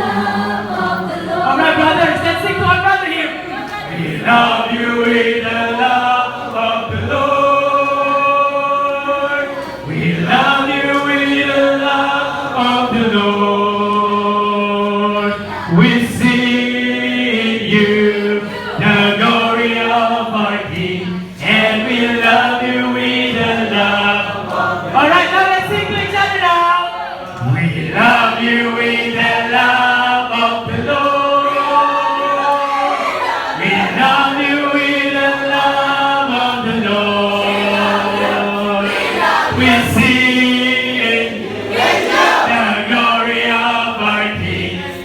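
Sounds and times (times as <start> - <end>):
congregation singing: 0.0 - 45.0.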